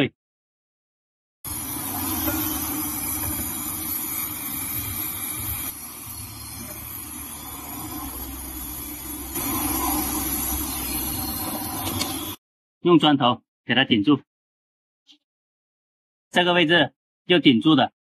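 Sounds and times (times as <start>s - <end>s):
torch flame hissing: 1.5s - 12.4s.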